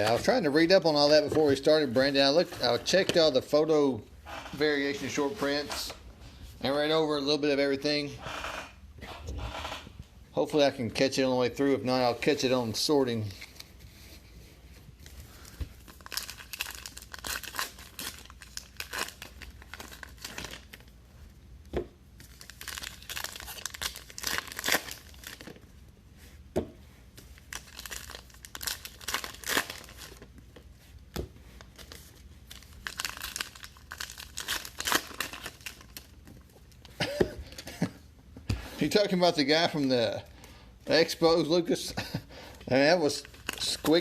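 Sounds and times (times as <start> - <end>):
foil wrappers tearing and crinkling: 15.8 - 20.9, 22.2 - 25.6, 27.4 - 30.3, 31.7 - 36.2, 43.0 - 44.0.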